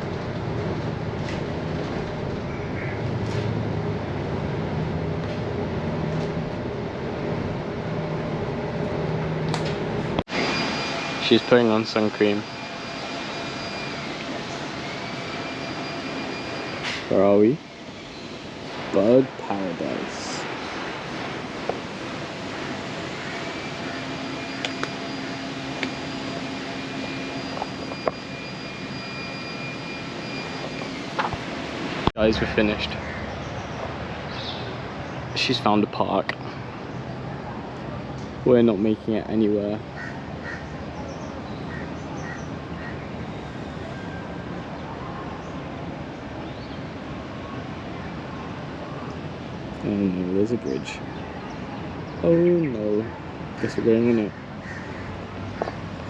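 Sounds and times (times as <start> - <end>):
mechanical engine hum: 0.0 - 56.0
vehicle interior drone: 0.0 - 56.0.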